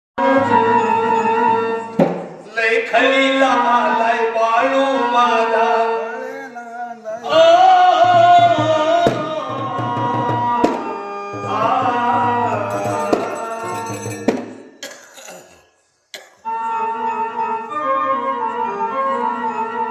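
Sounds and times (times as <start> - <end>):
rhythmic drum: 2.0 - 2.5, 7.9 - 14.8
elderly man singing: 2.4 - 14.4.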